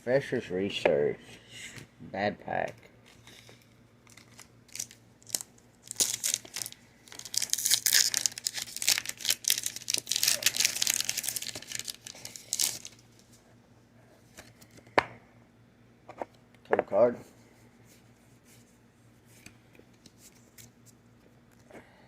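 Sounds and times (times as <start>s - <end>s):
foil wrapper crinkling: 3.2s - 13.0s.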